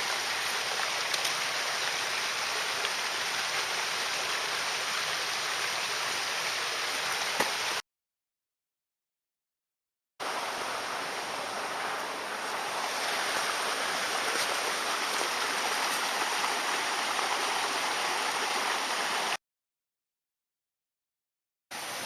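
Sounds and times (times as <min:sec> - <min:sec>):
flowing water rushing: 0:00.0 - 0:07.8, 0:10.2 - 0:19.4, 0:21.7 - 0:22.0.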